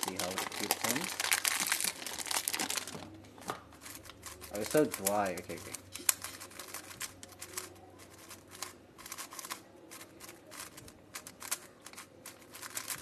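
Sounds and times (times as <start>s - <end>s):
plastic puzzle cube clicking: 3.8s - 13.0s.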